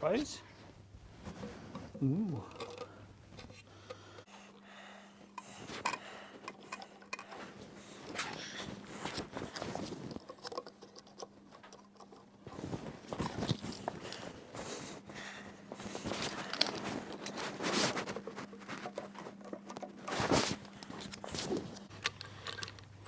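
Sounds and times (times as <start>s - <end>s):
timber parts clicking and scraping: 1.7s - 23.0s.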